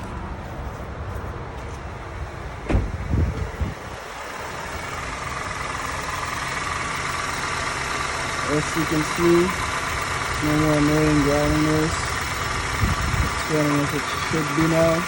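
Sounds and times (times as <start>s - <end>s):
car engine idling: 0.0s - 15.0s
loud thumps: 2.6s - 3.7s.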